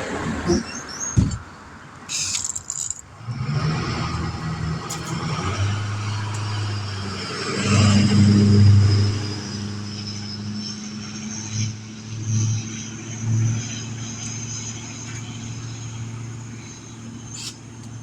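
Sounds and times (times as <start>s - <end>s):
brief rattle: 2.1s - 3.1s
vehicle engine running: 2.2s - 18.0s.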